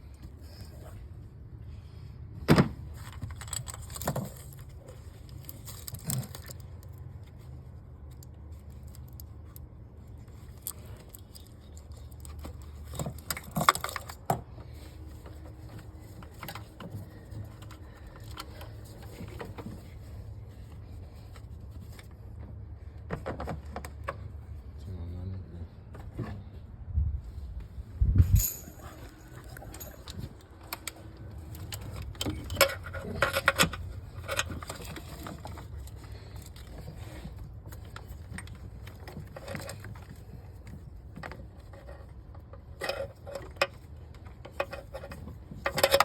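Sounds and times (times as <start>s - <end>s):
metal clinking and jingling: 28.2s - 30.4s.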